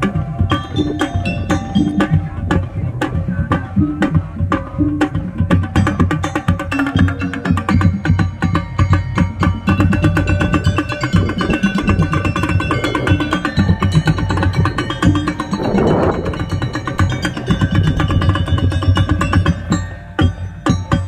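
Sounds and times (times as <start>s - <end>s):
rapid marching drums: 0.0s - 21.0s
melody of held notes: 8.7s - 20.4s.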